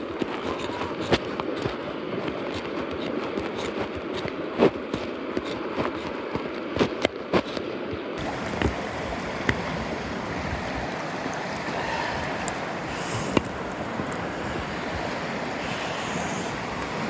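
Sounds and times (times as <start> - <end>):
campfire crackling and popping: 8.2 - 17.0
stream rushing: 8.2 - 17.0.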